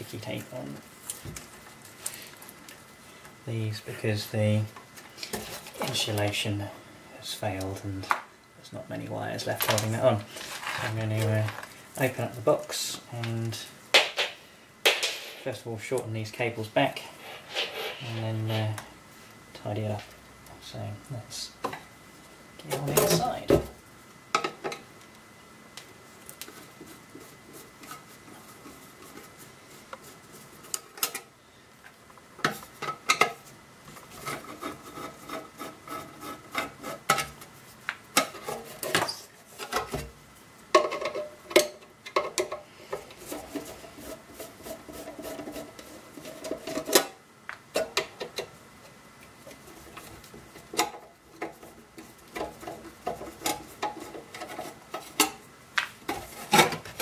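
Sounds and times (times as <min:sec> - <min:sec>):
hand tools clicking and scraping: 0:17.1 - 0:18.8, 0:49.5 - 0:55.4.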